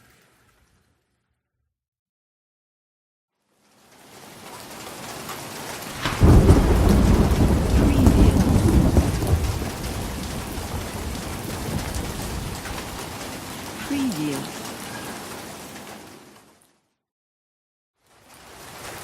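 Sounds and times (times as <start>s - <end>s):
rain falling: 3.4s - 16.8s, 18.0s - 19.0s
thunder crack and rumble: 6.0s - 13.2s.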